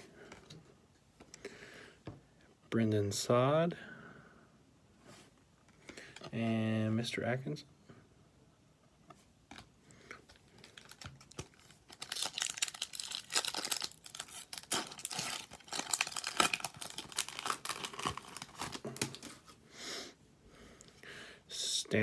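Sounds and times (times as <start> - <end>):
wrapper tearing and crinkling: 10.4 - 19.5.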